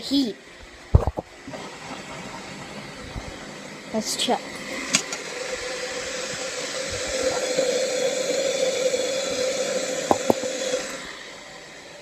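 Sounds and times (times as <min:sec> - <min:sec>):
water boiling in electric kettle: 0:00.0 - 0:12.0
kettle switch clicks: 0:10.1 - 0:10.5.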